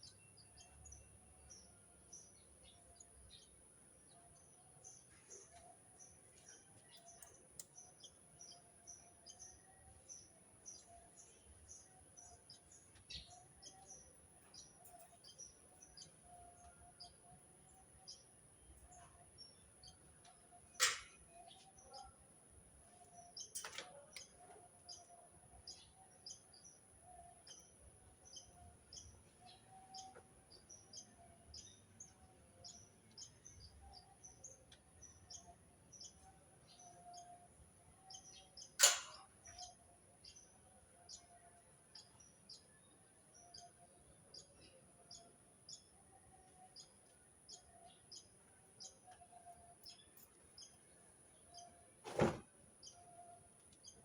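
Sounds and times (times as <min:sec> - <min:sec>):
small birds chirping: 0:00.0 - 0:54.0
sharp click: 0:38.8 - 0:39.3.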